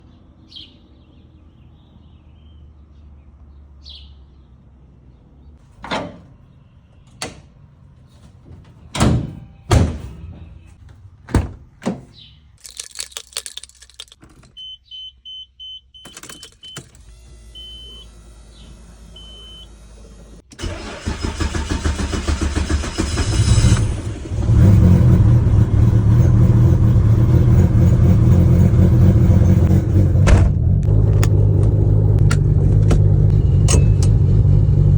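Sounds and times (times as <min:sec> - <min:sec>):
short electronic beeps: 0:14.6 - 0:16.9
engine starter cranking: 0:16.1 - 0:24.5.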